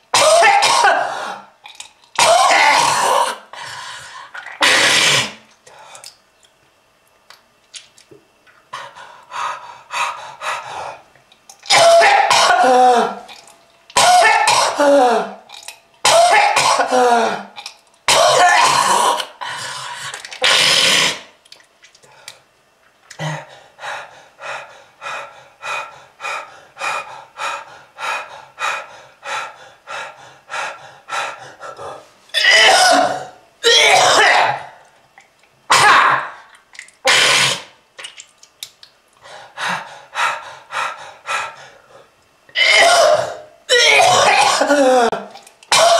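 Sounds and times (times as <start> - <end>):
loud hacking coughing fits: 0.1 - 1.4, 2.2 - 3.4, 4.6 - 5.4, 11.7 - 13.2, 14.0 - 15.4, 16.0 - 19.3, 32.4 - 34.8, 35.7 - 36.4, 37.1 - 37.7, 42.5 - 45.9
person coughing: 0.2 - 1.2, 2.2 - 3.4, 11.7 - 13.2, 14.0 - 15.4, 16.1 - 17.5, 18.1 - 19.2, 32.4 - 34.8, 42.6 - 45.9.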